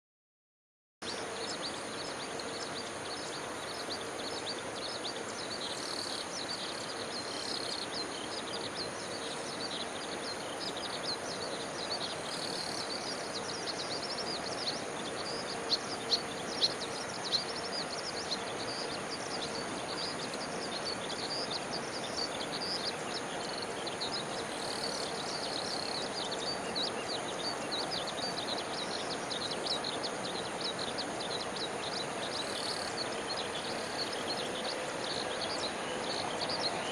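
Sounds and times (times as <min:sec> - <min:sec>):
outdoor background noise: 0:01.0 - 0:36.9.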